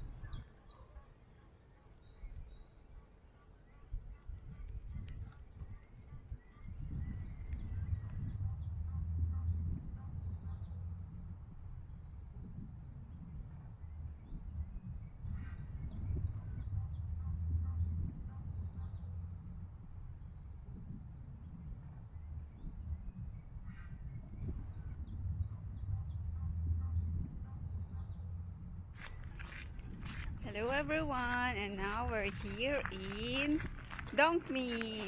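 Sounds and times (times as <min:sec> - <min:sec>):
songbird singing with trill: 0:00.0 - 0:04.7, 0:05.6 - 0:35.0
steady low rumble: 0:04.0 - 0:35.0.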